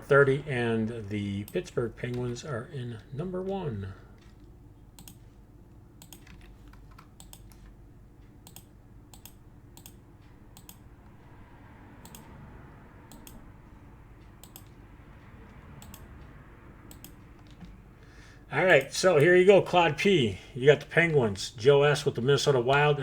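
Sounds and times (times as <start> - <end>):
low room hum: 0.0 - 23.0
computer keys clicking: 4.2 - 5.2, 6.0 - 7.8, 8.4 - 10.0, 10.6 - 10.8, 12.0 - 12.3, 13.1 - 13.4, 14.4 - 14.8, 15.8 - 16.3, 16.9 - 17.8.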